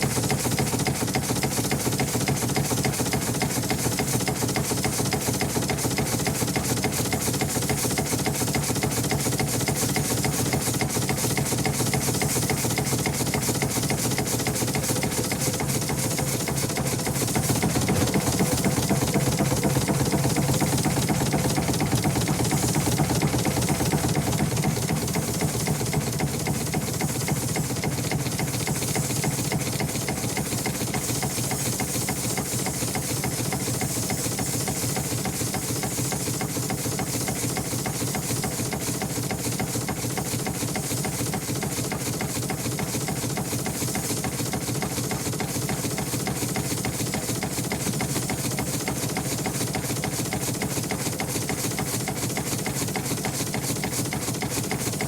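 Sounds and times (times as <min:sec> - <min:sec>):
engine running steadily: 0:00.0 - 0:55.0
hiss: 0:00.0 - 0:55.0.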